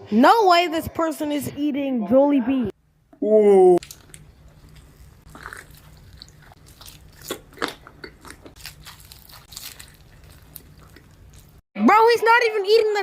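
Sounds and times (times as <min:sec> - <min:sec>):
person crunching fried chicken: 0:03.8 - 0:11.6.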